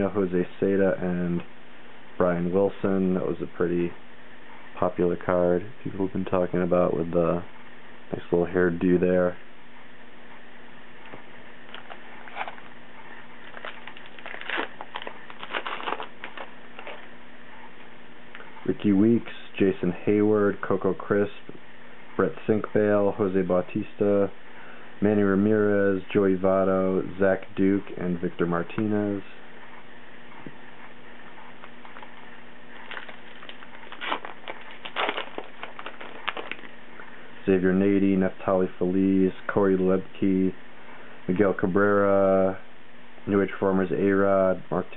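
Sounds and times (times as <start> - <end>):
cards and foil wrapper crinkling: 11.7 - 12.7, 13.4 - 17.1, 32.8 - 36.8.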